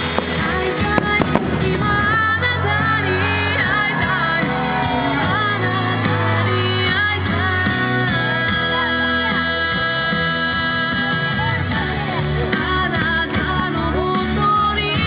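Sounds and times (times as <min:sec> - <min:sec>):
song with vocals and instruments: 0:00.0 - 0:15.0.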